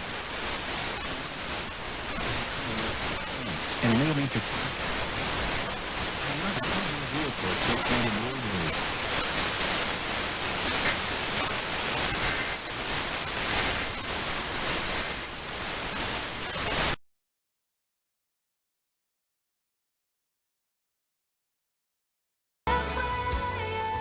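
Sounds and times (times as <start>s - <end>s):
radio static hiss: 0.0s - 17.0s
faint voice: 2.2s - 4.8s, 6.2s - 8.8s.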